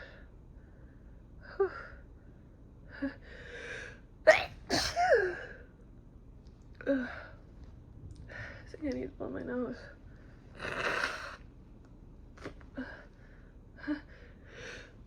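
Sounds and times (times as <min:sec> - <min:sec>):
woman sneezing: 0:04.3 - 0:05.4.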